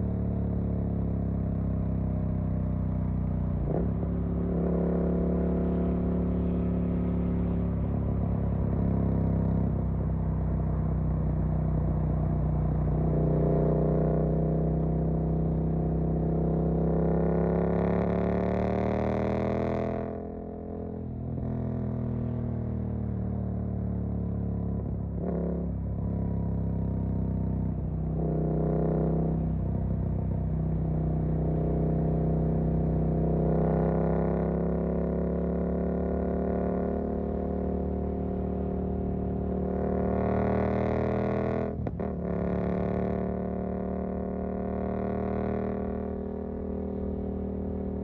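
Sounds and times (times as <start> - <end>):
motorcycle engine under way: 24.1 - 48.0.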